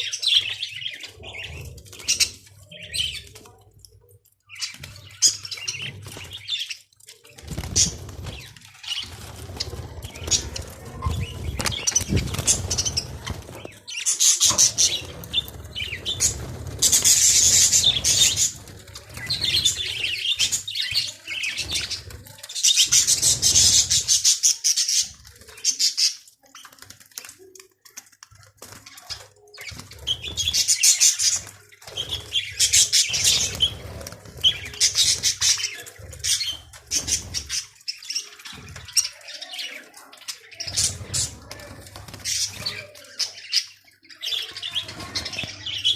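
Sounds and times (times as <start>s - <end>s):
budgerigars chattering: 7.8s - 18.6s.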